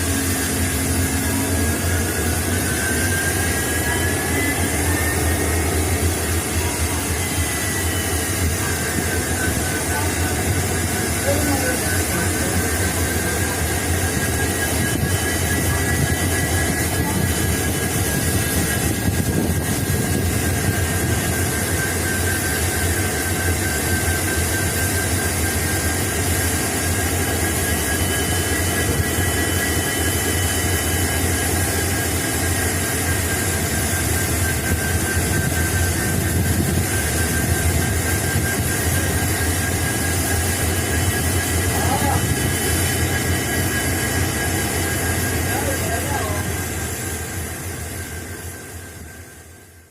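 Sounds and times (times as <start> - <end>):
high whine: 0.0 - 49.9
locomotive engines running: 0.0 - 49.9.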